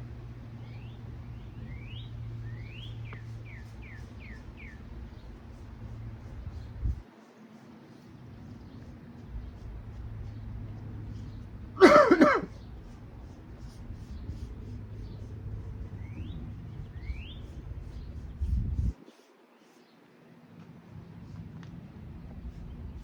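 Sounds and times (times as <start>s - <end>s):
steady low rumble: 0.0s - 7.0s, 9.2s - 19.0s
man coughing: 11.8s - 12.5s.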